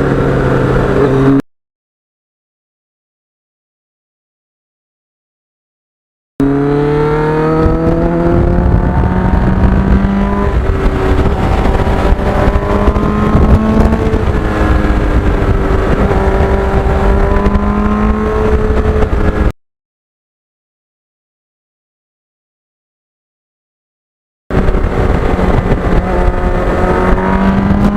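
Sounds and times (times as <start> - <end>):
low wind rumble: 0.0 - 1.4, 6.4 - 19.5, 24.5 - 27.9
motorcycle engine shifting gears: 6.4 - 19.5, 24.5 - 27.9.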